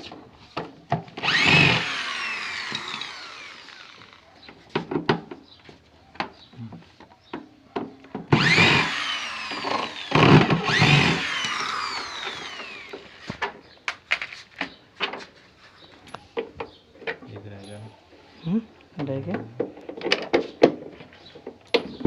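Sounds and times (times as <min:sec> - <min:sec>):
electric drill motor whine: 0:01.2 - 0:04.2, 0:08.3 - 0:13.4.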